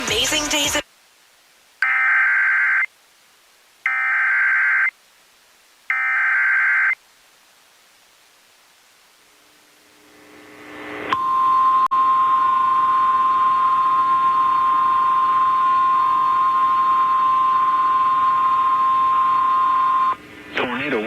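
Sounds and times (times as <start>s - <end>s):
loud steady alert tone: 3.9s - 4.9s.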